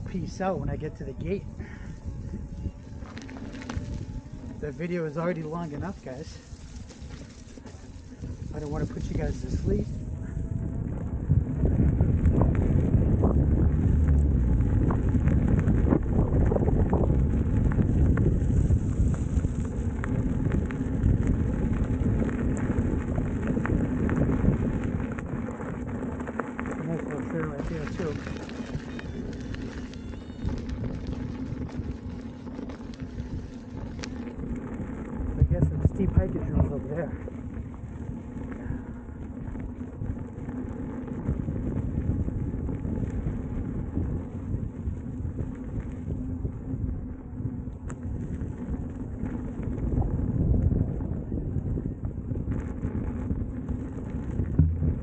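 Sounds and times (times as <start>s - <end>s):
steady low hum: 0.0s - 55.0s
tyre rolling on trail: 0.0s - 55.0s
wind buffeting microphone: 0.0s - 55.0s
small clicks and ticks: 1.2s - 55.0s.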